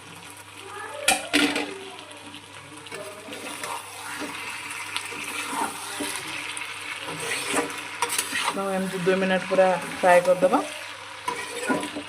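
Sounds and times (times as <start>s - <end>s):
fish sizzling in a frying pan: 0.0s - 12.0s
spatula clicking and scraping: 3.3s - 8.9s, 11.2s - 12.0s.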